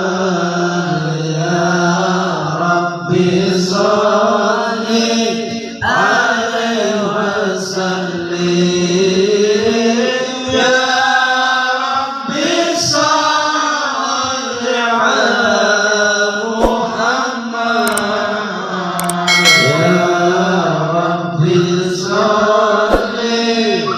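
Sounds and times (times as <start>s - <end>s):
group chanting in unison: 0.0s - 19.0s, 20.4s - 23.9s
brief click: 17.8s - 18.1s, 19.0s - 20.1s.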